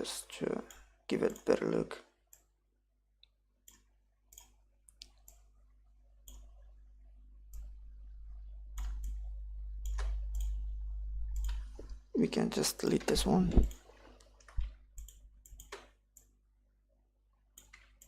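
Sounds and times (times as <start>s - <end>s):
computer mouse clicking: 3.2s - 5.6s, 6.2s - 6.6s, 8.8s - 10.7s, 11.3s - 12.0s, 13.0s - 16.4s, 17.6s - 18.0s
low hum: 5.4s - 12.2s.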